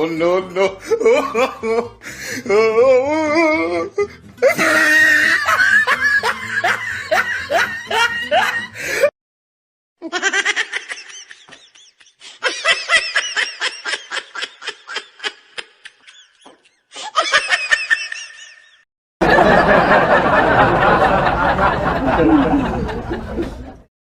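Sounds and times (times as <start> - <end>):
full dense laughter: 0.6 - 2.0, 4.4 - 9.1, 10.0 - 23.9
rapid pulsing laughter: 10.2 - 23.8.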